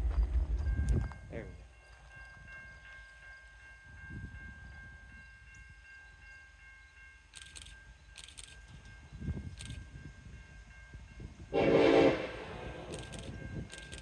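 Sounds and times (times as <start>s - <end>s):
low rumble of freight train: 0.0s - 14.0s.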